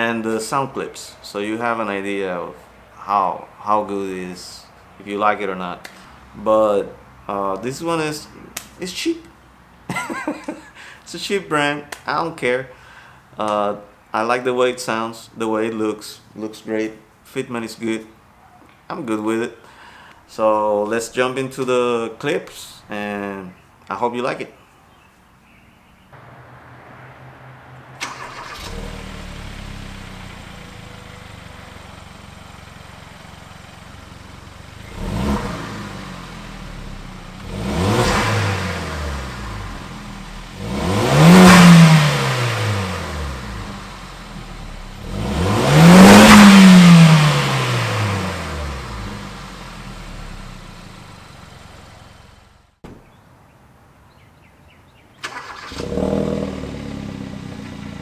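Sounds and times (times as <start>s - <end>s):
car engine idling and revving: 26.2s - 52.8s, 55.3s - 58.0s.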